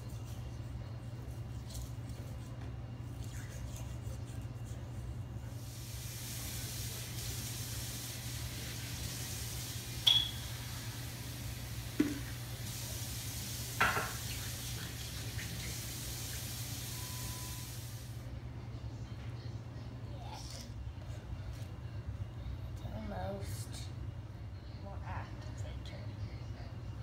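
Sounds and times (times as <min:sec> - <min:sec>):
watery hiss: 0:05.6 - 0:18.2.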